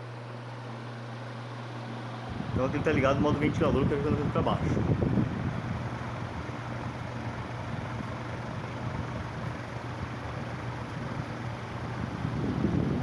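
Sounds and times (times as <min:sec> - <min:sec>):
low motor hum: 0:00.0 - 0:13.0.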